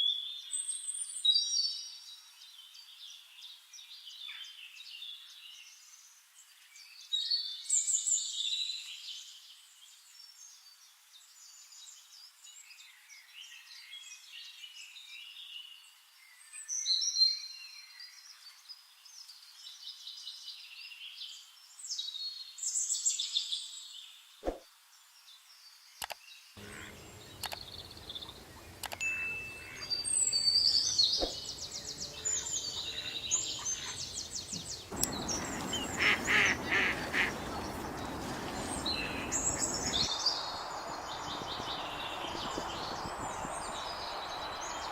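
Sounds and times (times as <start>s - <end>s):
birds chirping: 26.6s - 44.9s
steady background noise: 26.6s - 44.9s.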